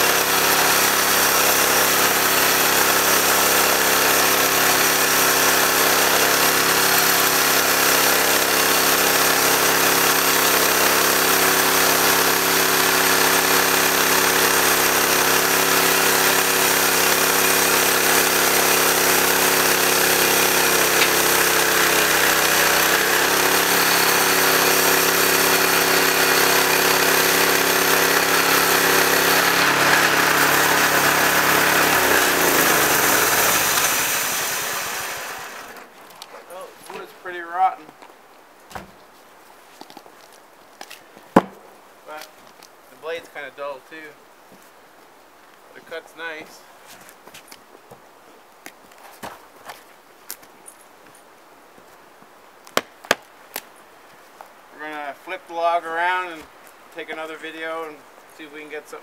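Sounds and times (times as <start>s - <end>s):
bandsaw mill sawing log: 0.0s - 37.8s, 54.8s - 58.9s.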